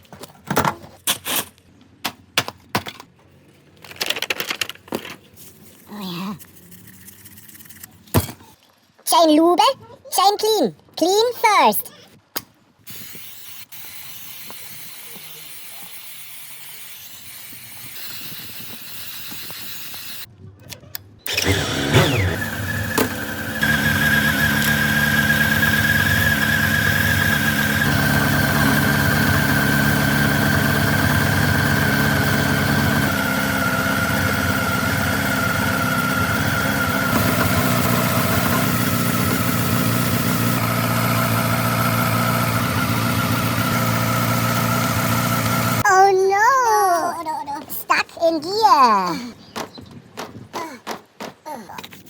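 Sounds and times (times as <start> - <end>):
motorcycle engine running: 21.4 - 45.8.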